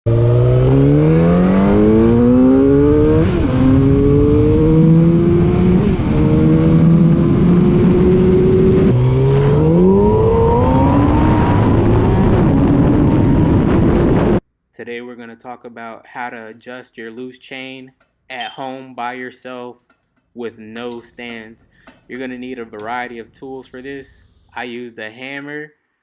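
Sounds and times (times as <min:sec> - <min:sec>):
motorcycle engine accelerating: 0:00.1 - 0:14.4.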